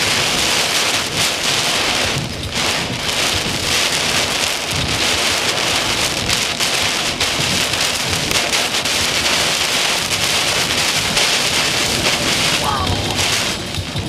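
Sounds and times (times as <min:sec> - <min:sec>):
rain hitting a vehicle: 0:00.0 - 0:14.0
wind gusts rumbling: 0:00.0 - 0:14.0.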